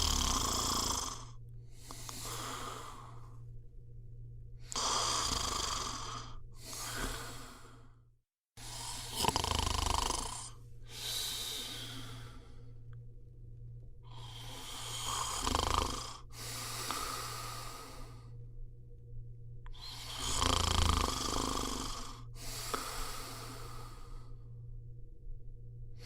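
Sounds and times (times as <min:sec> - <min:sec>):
person snoring: 0:00.0 - 0:03.4, 0:04.6 - 0:08.0, 0:08.6 - 0:12.8, 0:14.1 - 0:18.3, 0:19.7 - 0:24.5
steady low hum: 0:00.0 - 0:26.0.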